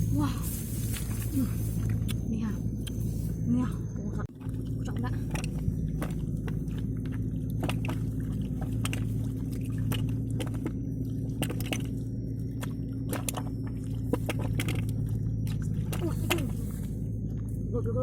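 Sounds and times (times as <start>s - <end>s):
low motor hum: 0.0s - 18.0s
sharp wet clicks and squelches: 4.3s - 17.6s.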